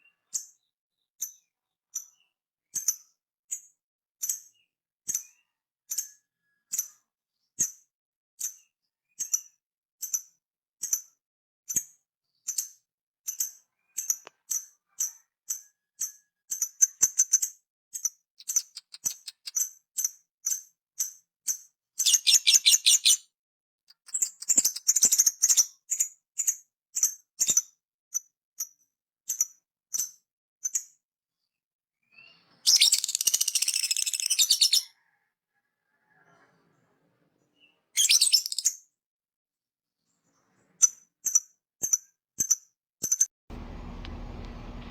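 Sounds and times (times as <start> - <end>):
parrot chirping: 18.4 - 19.6, 22.0 - 23.2, 32.7 - 34.9, 38.0 - 38.7.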